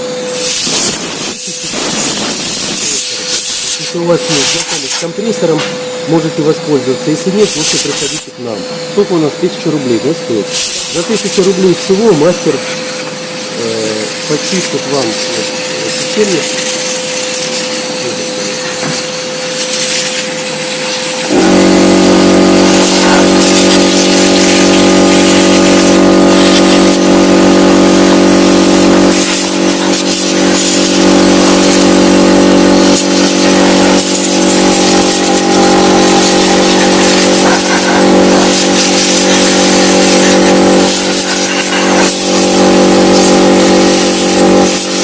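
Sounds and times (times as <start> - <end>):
electric motor humming: 0.0 - 45.0
compressed air hissing: 0.2 - 45.0.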